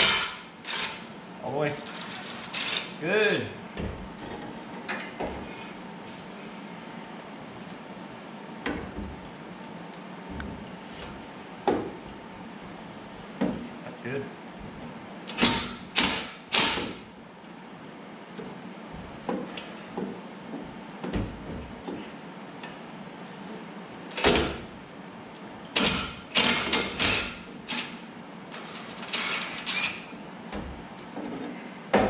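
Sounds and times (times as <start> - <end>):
ratchet clicking and clanking: 0.0 - 1.1, 1.9 - 2.9, 25.8 - 28.0, 28.6 - 30.1.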